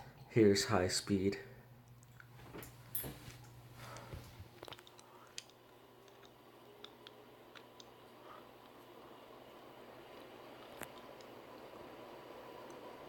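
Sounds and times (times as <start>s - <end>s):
faint steady hum: 0.0s - 13.0s
ceiling fan motor and air rush: 2.6s - 13.0s.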